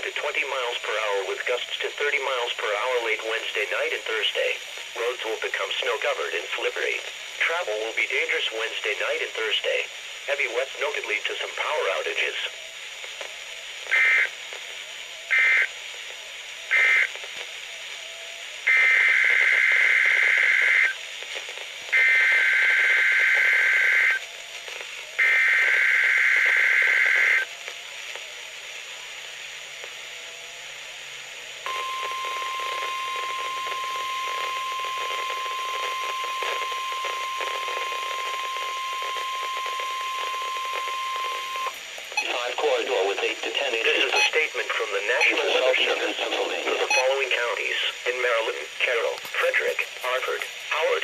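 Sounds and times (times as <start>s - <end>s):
steady warning alarm tone: 31.6s - 43.1s
warbling data bursts: 31.7s - 51.0s.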